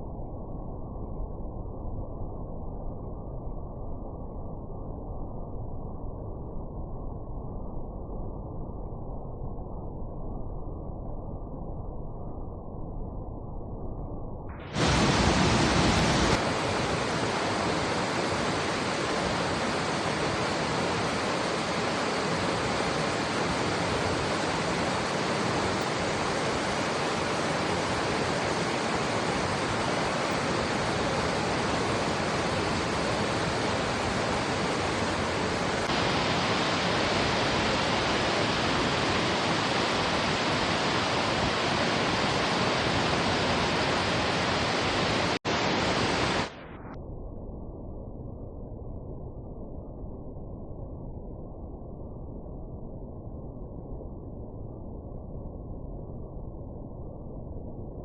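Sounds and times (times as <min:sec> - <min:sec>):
river water rushing: 0:14.8 - 0:46.5.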